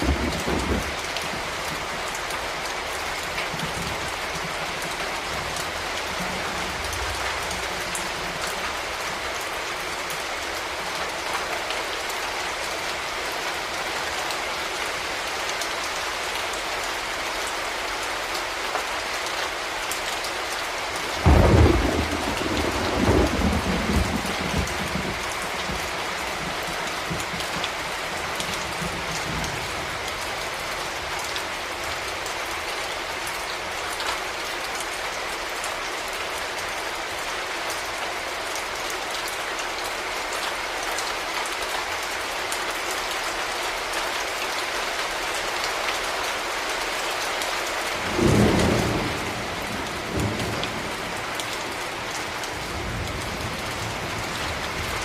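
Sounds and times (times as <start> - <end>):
steady rain falling: 0.0 - 55.0
thunder rolling: 21.2 - 26.5.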